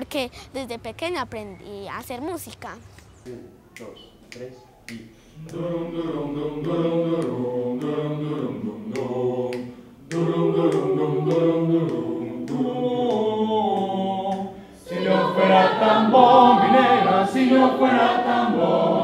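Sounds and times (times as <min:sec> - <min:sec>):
choir singing sustained chords: 0:05.4 - 0:19.0.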